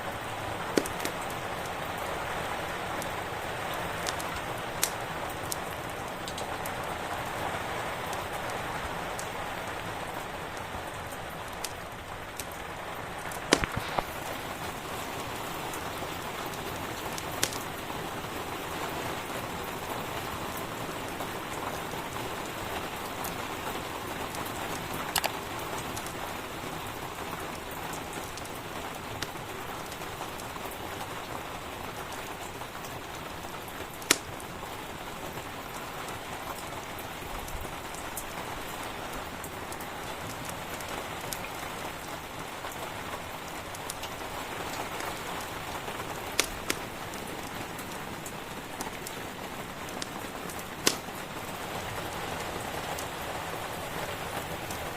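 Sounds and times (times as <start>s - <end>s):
steady rain hiss: 0.0s - 54.9s
sharp pops: 0.8s - 1.2s, 13.3s - 14.2s, 34.0s - 34.3s, 46.3s - 47.9s, 49.9s - 51.2s.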